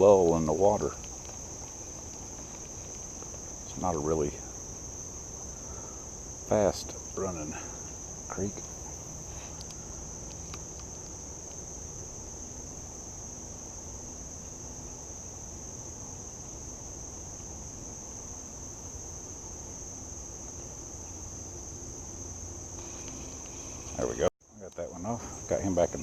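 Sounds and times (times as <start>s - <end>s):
insects singing: 0.0s - 26.0s
low background hiss: 0.0s - 26.0s.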